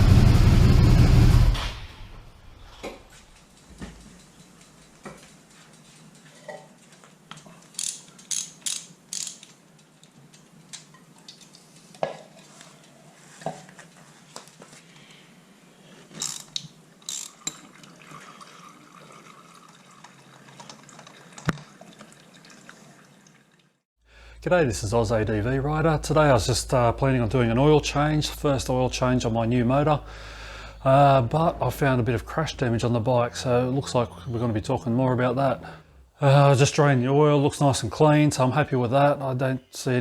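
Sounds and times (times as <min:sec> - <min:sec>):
rapid ratchet clicking: 0:07.8 - 0:09.5, 0:16.2 - 0:17.5.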